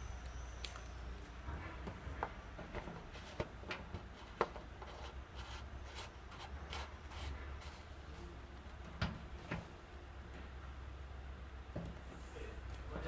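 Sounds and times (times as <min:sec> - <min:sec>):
light rubbing and scraping: 0:01.4 - 0:09.8.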